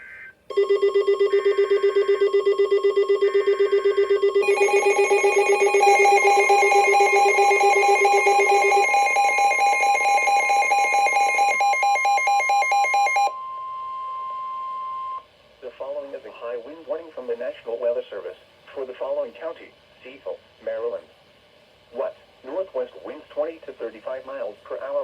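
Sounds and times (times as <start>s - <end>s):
steady high tone: 0.0s - 15.2s
pulsing emergency alert tones: 0.5s - 15.2s.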